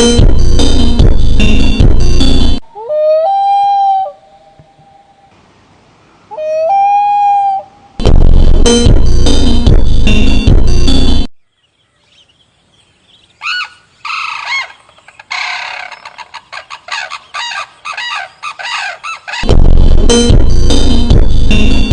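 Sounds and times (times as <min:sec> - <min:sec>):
loud electronic music: 0:00.0 - 0:02.6, 0:08.0 - 0:11.3, 0:19.4 - 0:21.9
bird calling: 0:06.2 - 0:08.0, 0:11.6 - 0:19.5.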